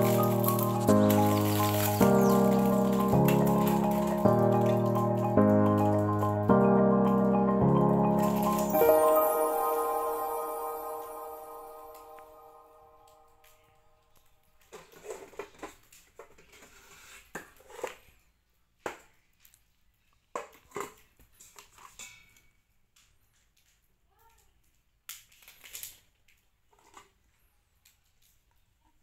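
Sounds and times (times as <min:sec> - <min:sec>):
packaging crinkles: 0:00.0 - 0:06.1, 0:25.1 - 0:27.0.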